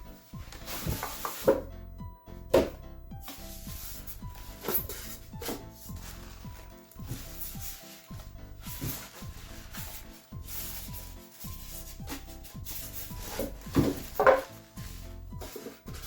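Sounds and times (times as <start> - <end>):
background music with bass pattern: 0.0 - 16.0
packaging rubbing and scraping: 3.2 - 16.0.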